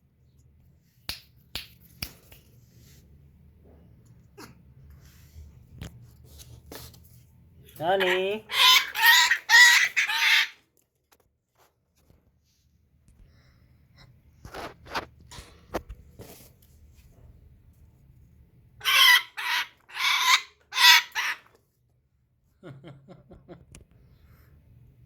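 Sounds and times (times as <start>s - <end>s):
parrot squawking: 7.8s - 10.6s, 18.8s - 21.5s.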